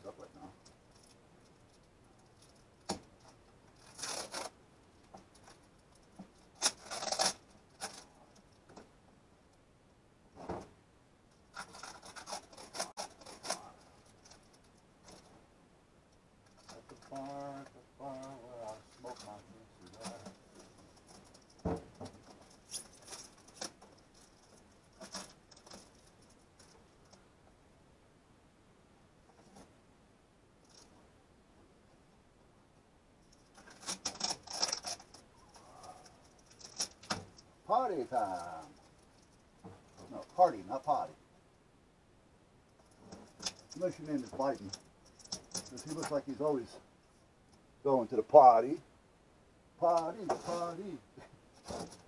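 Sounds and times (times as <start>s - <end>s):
rubbing and rustling of wire: 0.0s - 9.0s, 11.3s - 27.3s, 29.2s - 29.8s, 30.6s - 31.1s, 33.1s - 41.2s, 42.7s - 47.7s, 49.8s - 52.0s.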